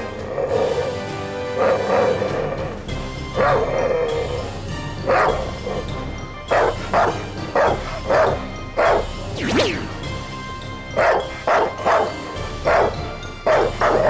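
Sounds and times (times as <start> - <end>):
background music: 0.0 - 14.0
dog-like yips and barks: 3.3 - 5.9, 6.5 - 9.9, 11.0 - 14.0.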